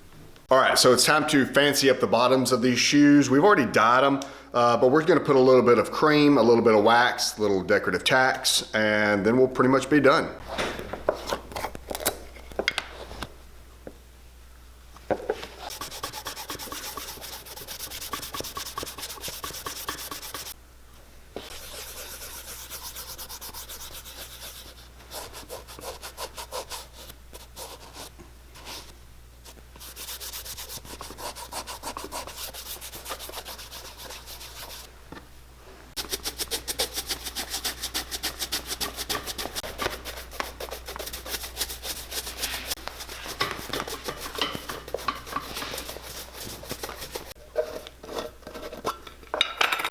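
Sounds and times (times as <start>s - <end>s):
rubbing strokes on leather sole: 15.6s - 20.6s, 21.5s - 28.9s, 29.8s - 34.9s, 36.0s - 47.4s.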